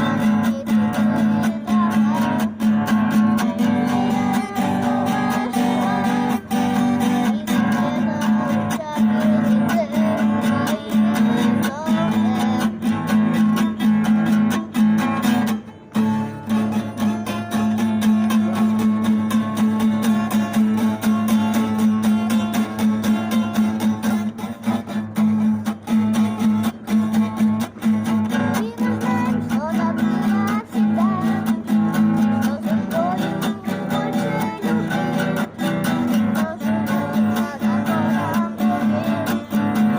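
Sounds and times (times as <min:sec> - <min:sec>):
strummed acoustic guitar: 0:00.0 - 0:39.9.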